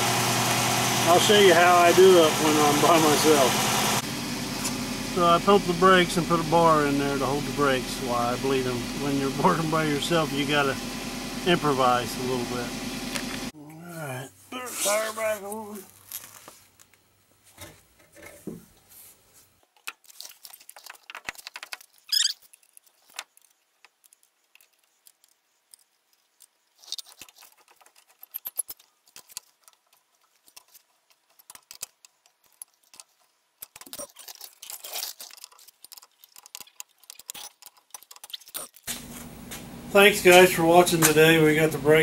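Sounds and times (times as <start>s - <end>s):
short high squeak: 22.1s - 22.5s.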